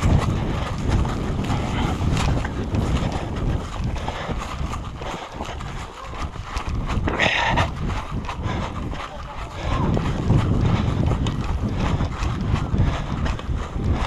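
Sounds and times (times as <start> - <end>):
wind rumbling on microphone: 0.0 - 14.0.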